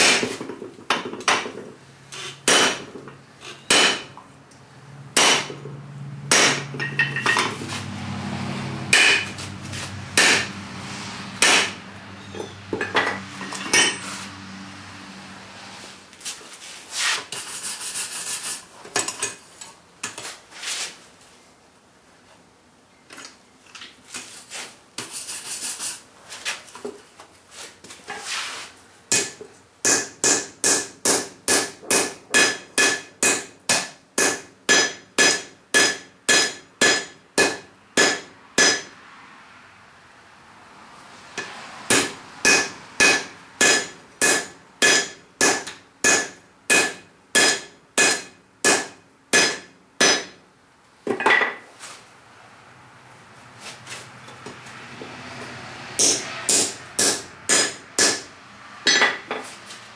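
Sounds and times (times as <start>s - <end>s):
hammer striking steel on anvil: 2.4s - 2.9s, 3.6s - 4.1s, 5.2s - 5.7s, 6.3s - 7.5s, 8.9s - 9.4s, 10.2s - 10.5s, 11.4s - 14.0s, 29.1s - 39.0s, 41.4s - 50.4s, 56.0s - 59.4s
tools clanking: 6.6s - 7.8s, 12.2s - 14.2s.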